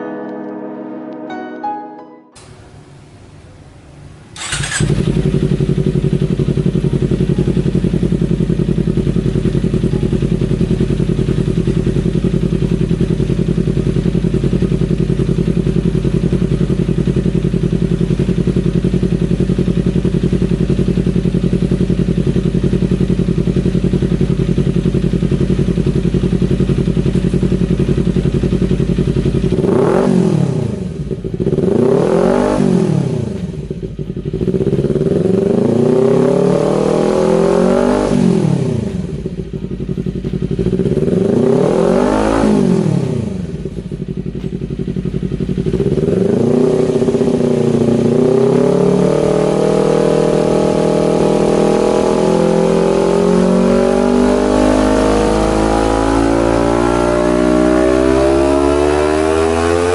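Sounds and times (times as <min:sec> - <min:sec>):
motorcycle engine idling: 0:04.4 - 0:53.6
motorcycle engine revving: 0:04.4 - 0:59.9.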